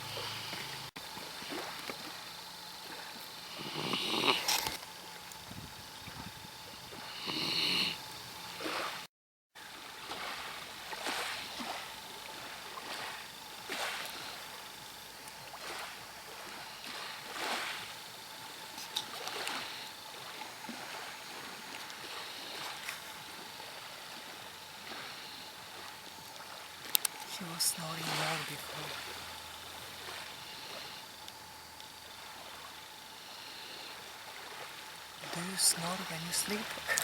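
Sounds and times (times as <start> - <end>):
puppy snoring softly: 2.9 - 4.6, 6.8 - 9.0.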